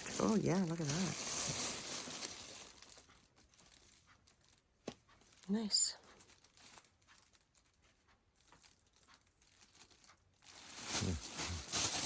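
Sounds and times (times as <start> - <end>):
craft supplies rustling in a bin: 0.0 - 3.8, 10.5 - 12.0.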